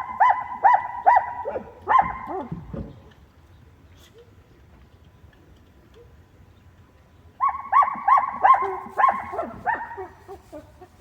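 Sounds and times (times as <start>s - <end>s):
dog barking: 0.1s - 2.5s, 7.4s - 10.6s.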